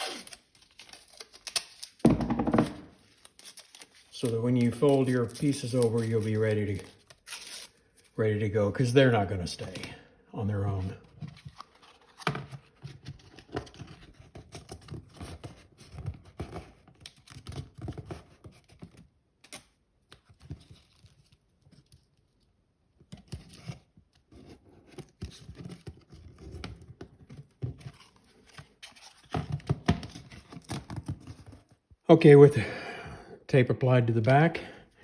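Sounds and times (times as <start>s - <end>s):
tape peeling and pressing: 0.0s - 2.1s, 2.8s - 8.0s.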